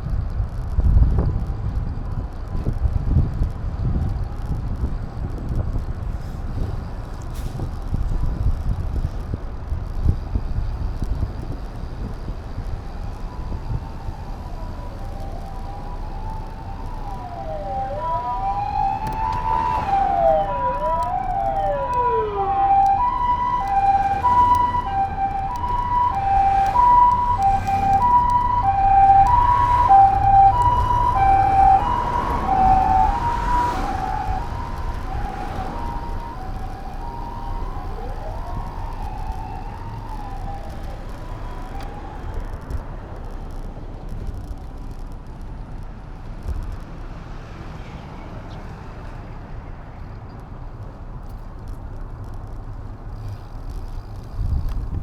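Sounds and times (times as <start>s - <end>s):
wind and road rumble: 0.0s - 55.0s
emergency vehicle siren: 11.4s - 44.8s.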